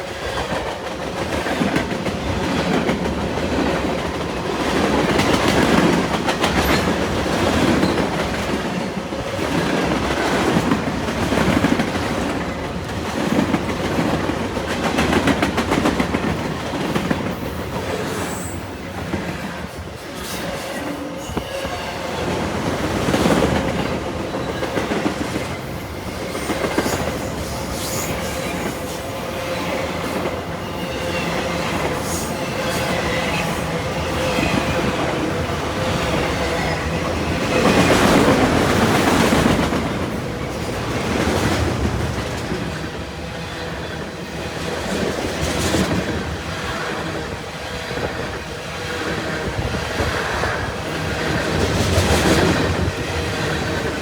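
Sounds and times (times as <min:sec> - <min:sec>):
train wheels clicking over rail joints: 0:00.3 - 0:19.3.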